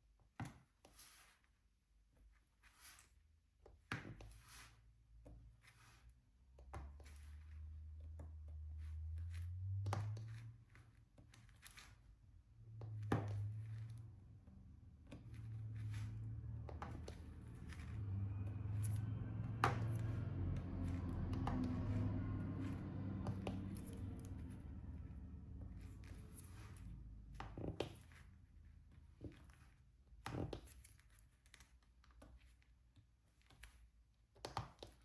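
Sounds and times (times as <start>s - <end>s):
low hum: 12.4s - 27.5s.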